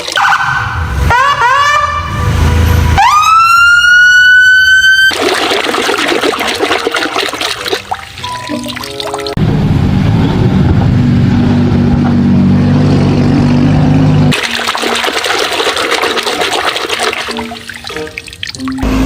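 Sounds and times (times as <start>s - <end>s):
water splashing and trickling: 0.0s - 0.2s, 4.1s - 9.4s, 14.2s - 18.9s
low engine-like hum: 9.4s - 14.3s.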